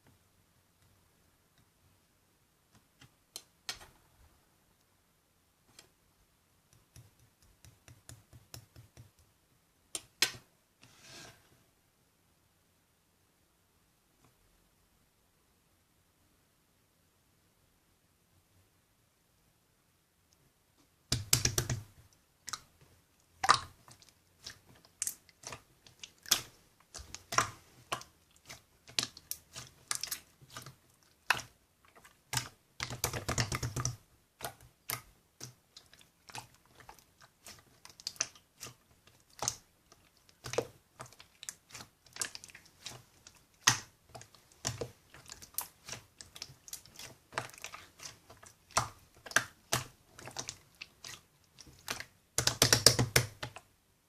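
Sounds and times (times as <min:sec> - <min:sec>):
slime being squished by hand: 0:23.4 - 0:53.6.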